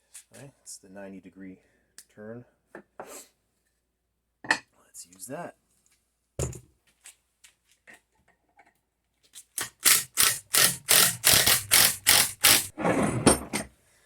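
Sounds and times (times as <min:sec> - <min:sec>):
impact driver driving screw: 0:09.6 - 0:12.7.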